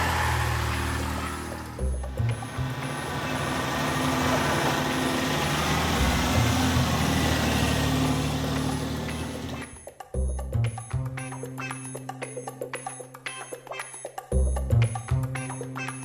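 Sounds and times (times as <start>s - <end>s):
road noise: 0.0s - 9.8s
vehicle engine running: 0.0s - 9.8s.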